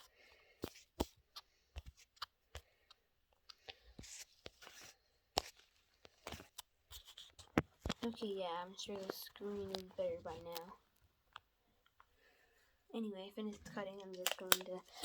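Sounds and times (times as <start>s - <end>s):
scissors snipping: 13.6s - 15.0s.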